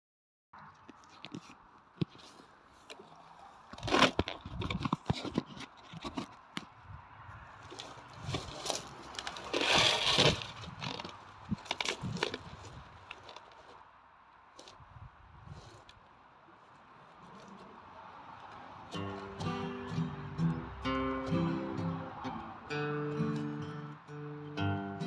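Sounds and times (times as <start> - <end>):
handling scrapes knocks and rustling: 0.8 - 6.8, 7.5 - 13.8, 15.4 - 19.7.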